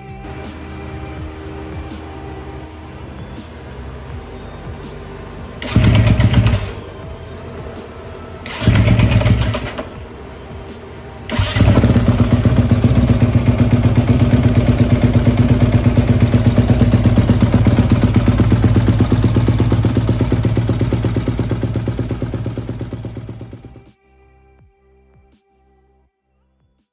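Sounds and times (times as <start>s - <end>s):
motorcycle engine idling: 4.1s - 7.8s, 8.5s - 10.0s, 11.3s - 23.9s.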